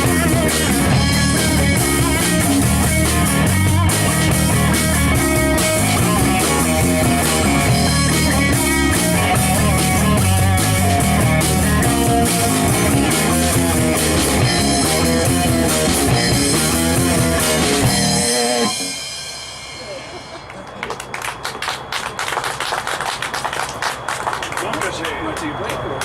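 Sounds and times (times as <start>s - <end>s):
bass guitar: 0.0s - 19.2s
drum kit: 0.0s - 20.5s
electric guitar: 0.0s - 21.0s.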